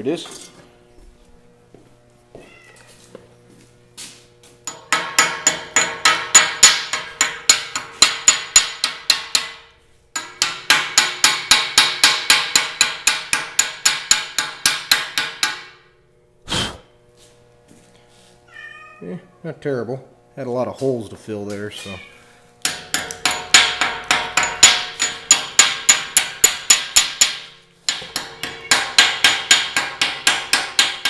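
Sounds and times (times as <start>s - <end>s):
chipping hammer striking metal: 4.7s - 15.8s, 22.6s - 31.0s.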